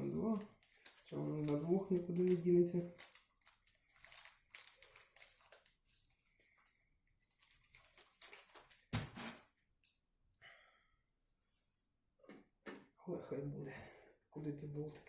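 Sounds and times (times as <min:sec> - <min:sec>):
small metal parts clicking: 0:00.0 - 0:10.0.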